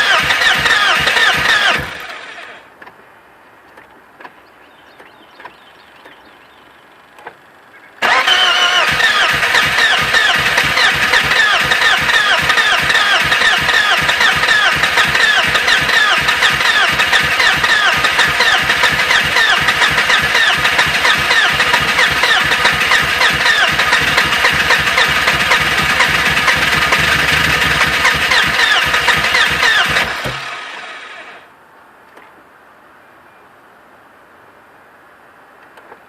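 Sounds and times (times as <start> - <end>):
engine cranking with starter whine: 0.0 - 2.7, 8.0 - 31.5.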